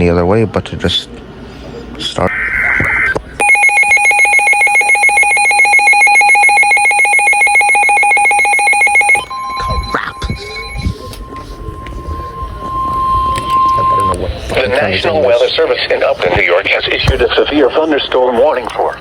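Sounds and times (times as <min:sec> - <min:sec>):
rapid electronic alarm trill: 0:03.4 - 0:15.6
steady single-pitch alarm tone: 0:03.4 - 0:16.0.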